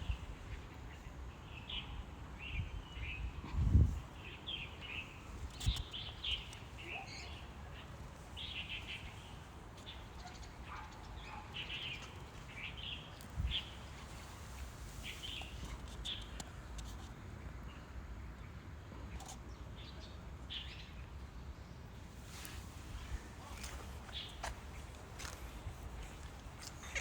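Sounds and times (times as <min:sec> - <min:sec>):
birds chirping: 0:04.2 - 0:17.0, 0:22.3 - 0:27.0.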